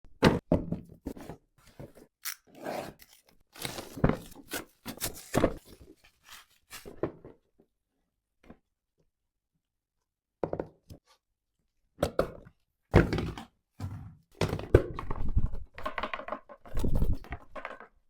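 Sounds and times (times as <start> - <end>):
packaging rustling and tearing: 2.2 - 7.0.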